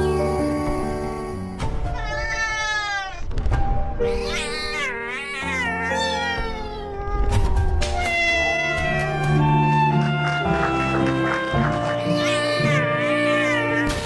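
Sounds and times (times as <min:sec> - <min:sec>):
background music: 0:00.0 - 0:14.0
cat meowing: 0:01.9 - 0:03.3, 0:04.0 - 0:10.0, 0:11.9 - 0:14.0.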